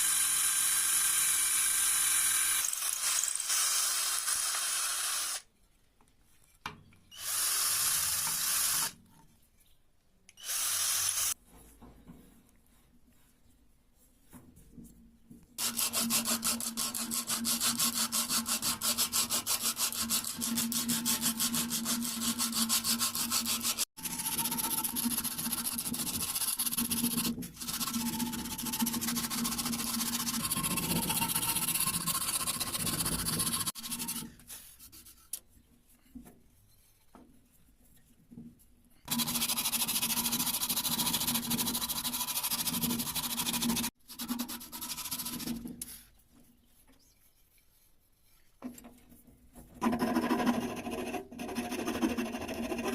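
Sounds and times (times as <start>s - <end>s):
hand tool rasping on wood: 15.6s - 34.3s, 49.8s - 52.9s.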